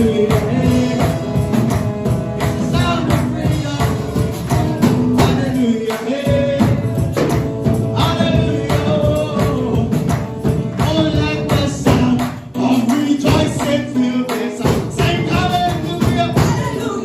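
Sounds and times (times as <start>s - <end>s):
percussion beat: 0.0s - 17.0s
voices singing gospel: 0.0s - 17.0s.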